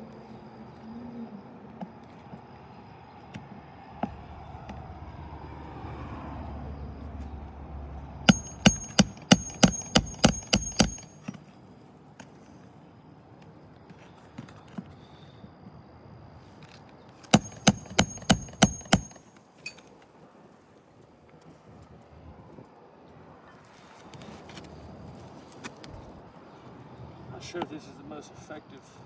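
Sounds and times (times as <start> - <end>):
hammer driving nails: 8.3 - 11.4, 17.3 - 19.8.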